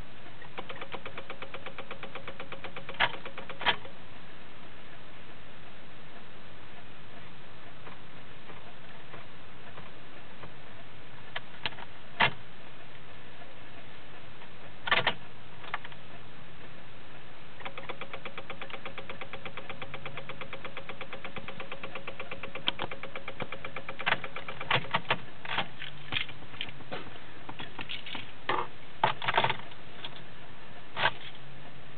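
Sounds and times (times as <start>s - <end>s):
car starter clicking: 0.5s - 3.9s, 17.6s - 25.7s.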